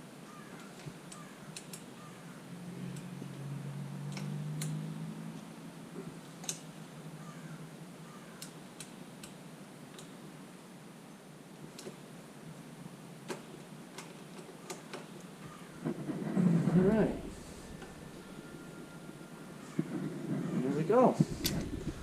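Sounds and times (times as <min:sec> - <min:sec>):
low steady hum: 0:15.5 - 0:22.0.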